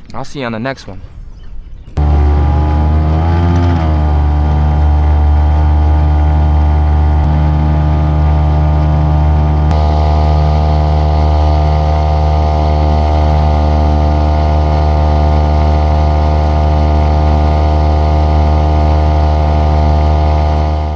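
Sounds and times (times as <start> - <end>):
outboard motor running: 2.0 - 20.9.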